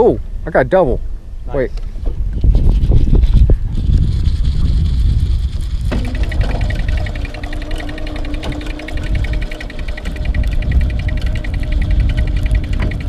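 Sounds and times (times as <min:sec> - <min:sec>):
low rumble of wind and boat: 0:00.0 - 0:13.0
fishing reel whirring clicks: 0:03.8 - 0:13.0.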